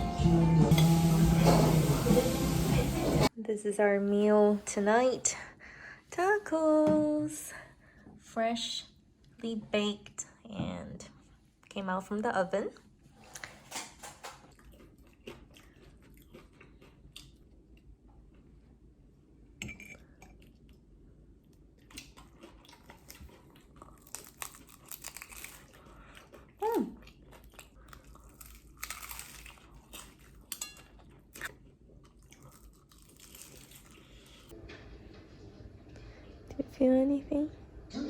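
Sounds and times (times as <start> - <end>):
crunchy bites and chewing: 14.4 - 17.5, 21.8 - 34.5.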